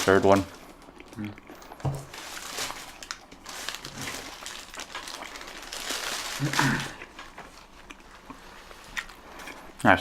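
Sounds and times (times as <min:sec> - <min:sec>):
food wrapper crinkling: 0:00.0 - 0:09.6
chewing: 0:00.6 - 0:01.8, 0:03.0 - 0:05.7, 0:06.4 - 0:09.8.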